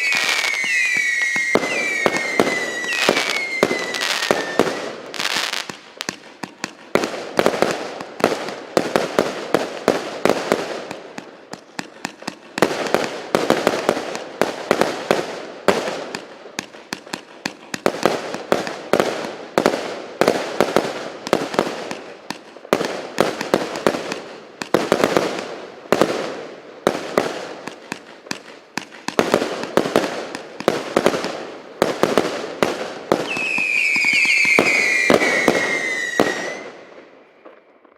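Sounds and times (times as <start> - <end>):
falling firework whistle: 0.0 - 5.4, 33.2 - 36.8
firework launches and bursts: 0.0 - 36.9.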